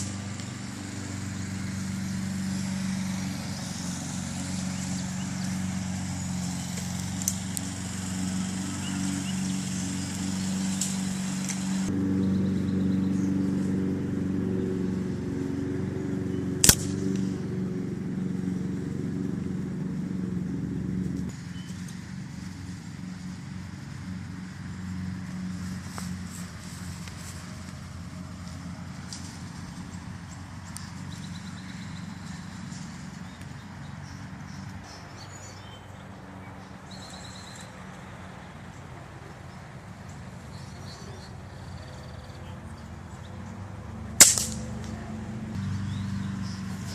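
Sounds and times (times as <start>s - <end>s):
low engine hum: 0.0s - 46.9s
rifle gunshot: 16.6s - 17.3s, 44.2s - 44.7s.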